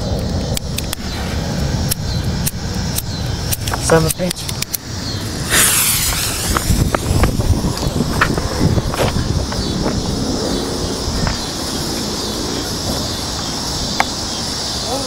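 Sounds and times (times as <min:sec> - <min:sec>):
firework fountain hissing: 0:00.4 - 0:15.0
firework pops: 0:05.4 - 0:09.7.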